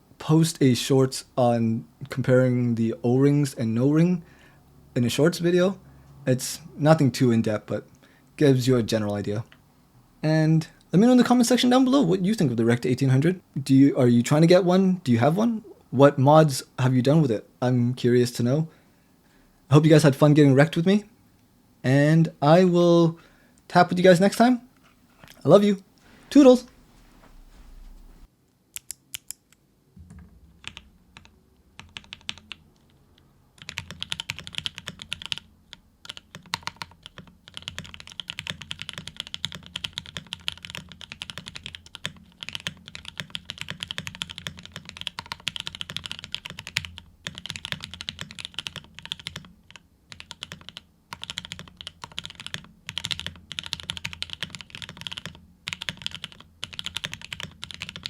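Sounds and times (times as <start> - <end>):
typing on mechanical keyboard: 30.6 - 58.0.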